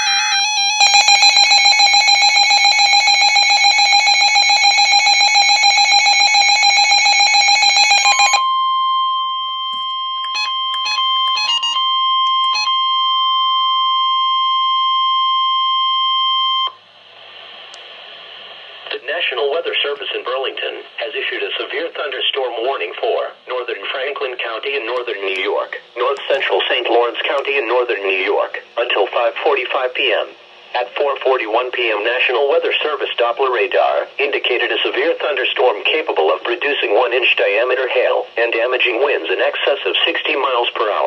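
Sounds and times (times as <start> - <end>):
pulsing electronic alarm: 0.0 - 16.8
steady alarm tone: 0.0 - 16.8
short beeps: 8.3 - 16.7.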